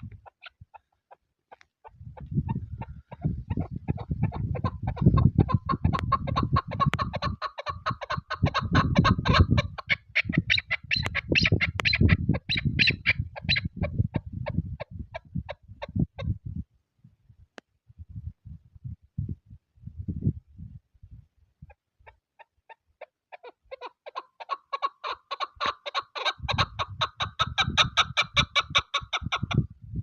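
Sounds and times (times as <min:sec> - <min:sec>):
wind rumbling on microphone: 0:00.0 - 0:00.8, 0:01.8 - 0:22.1, 0:25.5 - 0:30.0
partridge clucking calls: 0:00.0 - 0:16.0, 0:21.7 - 0:29.7.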